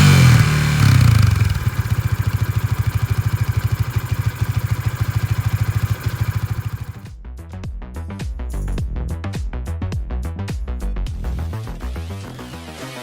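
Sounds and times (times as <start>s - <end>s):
motorcycle engine idling: 0.0s - 7.1s.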